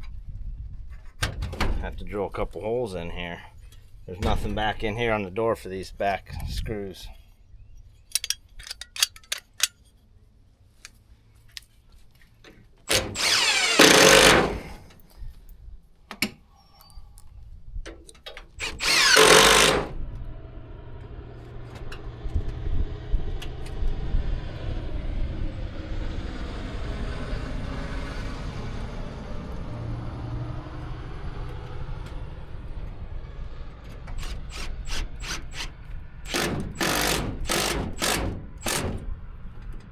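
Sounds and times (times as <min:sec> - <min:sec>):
low rumble: 0:00.0 - 0:06.6, 0:18.8 - 0:39.9
power drill boring into wood: 0:12.9 - 0:14.9, 0:18.6 - 0:20.0, 0:34.1 - 0:39.0.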